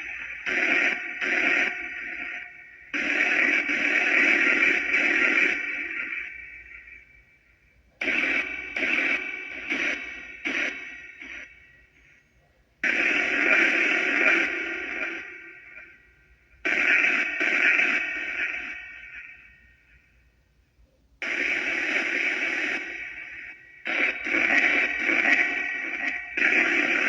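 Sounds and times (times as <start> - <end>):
white noise bursts with reverb: 0.0 - 7.2, 8.0 - 12.2, 12.8 - 20.0, 21.2 - 27.0.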